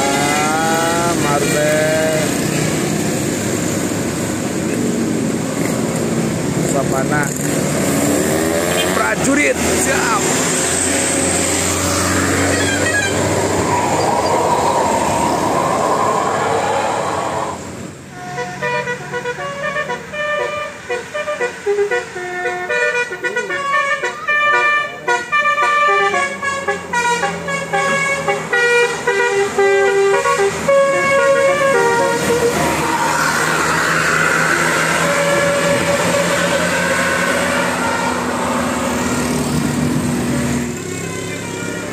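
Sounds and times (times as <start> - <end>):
traffic and engine noise: 0.0 - 41.9
musical car horn tune: 12.4 - 13.3, 18.1 - 33.0, 35.0 - 38.3, 40.8 - 41.9.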